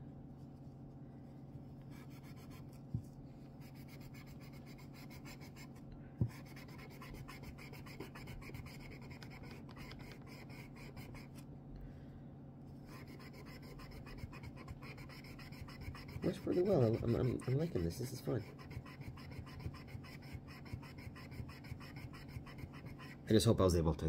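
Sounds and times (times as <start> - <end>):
steel wool rubbing on blade: 3.6 - 5.7, 6.4 - 11.4, 12.9 - 23.4.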